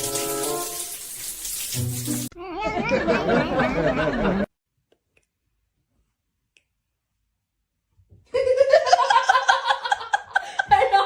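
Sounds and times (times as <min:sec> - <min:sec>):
person giggling: 0:08.3 - 0:11.0.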